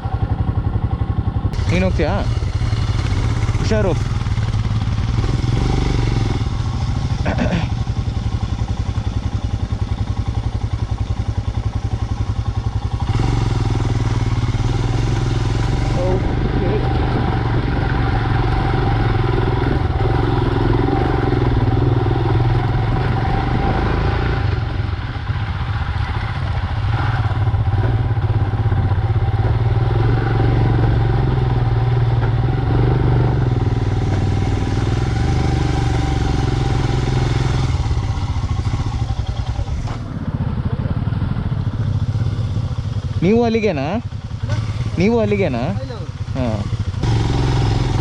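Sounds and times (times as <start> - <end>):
motorcycle engine running: 0.0 - 48.0.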